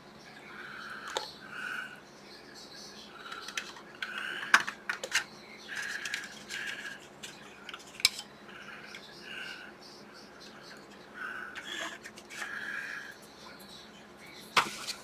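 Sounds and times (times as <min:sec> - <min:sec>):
plastic parts clicking and tapping: 0:03.3 - 0:08.3.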